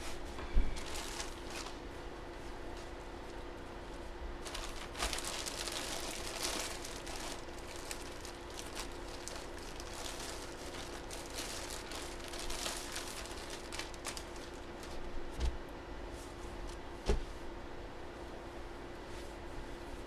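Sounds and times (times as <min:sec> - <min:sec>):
faint electrical hum: 0:00.0 - 0:20.0
plastic packaging crinkling: 0:00.8 - 0:01.8, 0:04.4 - 0:15.1.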